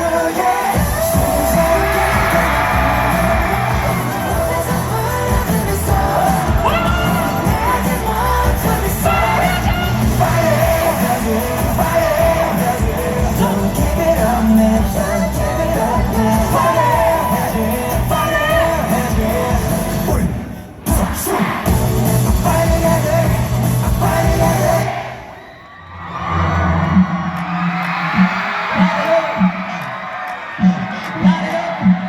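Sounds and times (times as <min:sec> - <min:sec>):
person singing: 0:00.0 - 0:25.1
crowd yelling: 0:00.0 - 0:32.0
live concert music: 0:00.0 - 0:32.0
heavy bass line: 0:00.8 - 0:20.3, 0:21.7 - 0:24.8.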